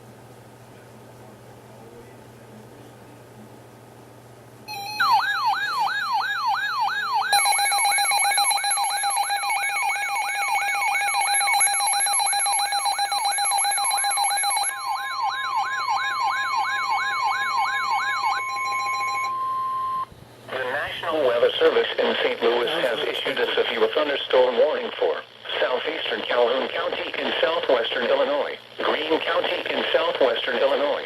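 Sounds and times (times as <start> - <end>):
siren yelp: 4.7 - 20.1
warning alarm tone: 4.7 - 20.1
steady electronic tones: 4.7 - 24.1.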